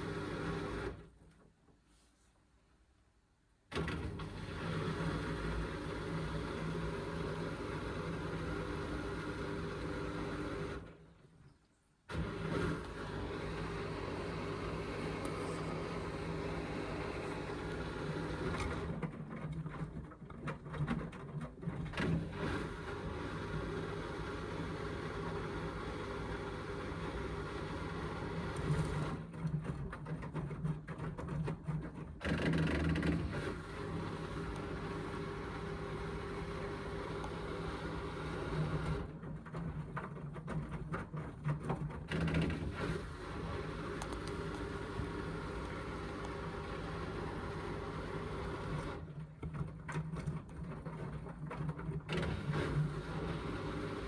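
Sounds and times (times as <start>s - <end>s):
washing machine motor humming: 12.1s - 29.9s, 32.2s - 54.0s.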